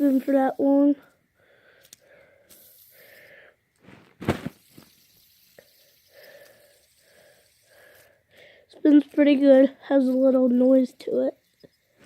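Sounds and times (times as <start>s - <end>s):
fidget spinner click: 4.5s - 8.1s.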